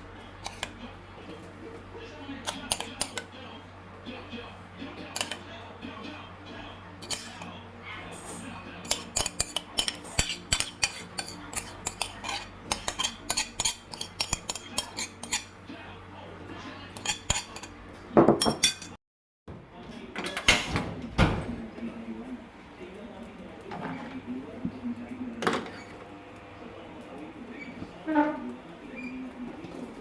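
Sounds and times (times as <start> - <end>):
utensils clattering on dishes: 5.0 - 5.4, 7.0 - 7.5, 8.8 - 15.5, 17.0 - 19.0.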